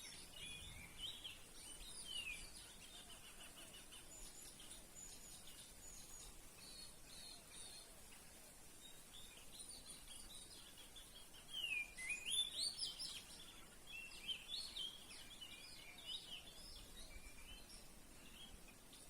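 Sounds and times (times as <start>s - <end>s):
bird singing whistled phrases: 11.4s - 13.2s.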